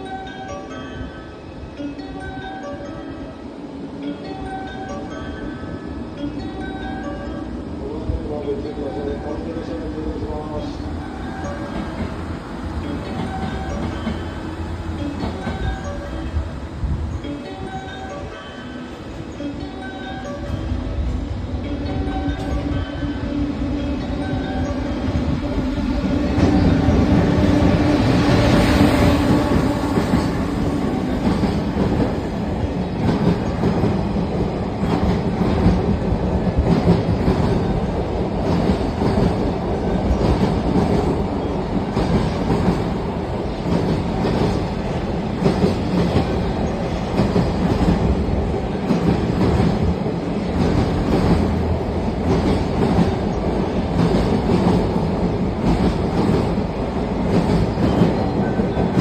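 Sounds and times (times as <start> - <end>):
freight train wagons clattering: 8.2 - 18.4, 21.6 - 59.0.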